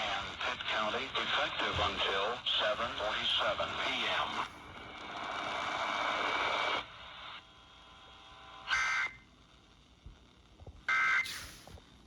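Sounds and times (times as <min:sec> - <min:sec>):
burst of hiss: 0:11.2 - 0:11.8.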